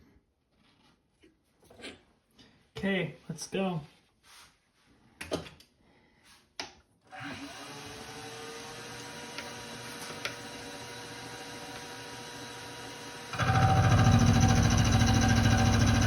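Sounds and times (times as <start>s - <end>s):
milling machine spindle motor whine: 7.4s - 16.0s.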